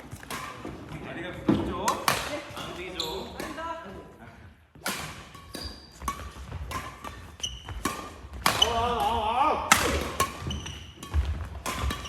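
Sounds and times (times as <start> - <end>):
racket striking shuttlecock: 0.0 - 0.8, 1.8 - 3.6, 4.7 - 12.0
shoe squeaks on court floor: 2.8 - 3.4, 5.4 - 7.9, 10.4 - 11.2.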